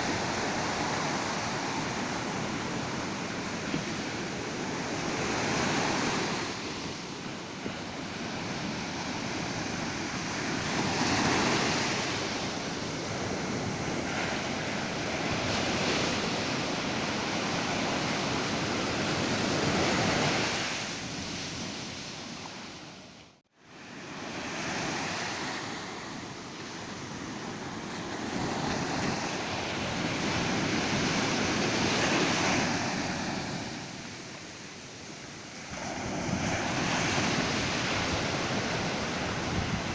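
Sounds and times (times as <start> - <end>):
ocean surf breaking on beach: 0.0 - 39.9.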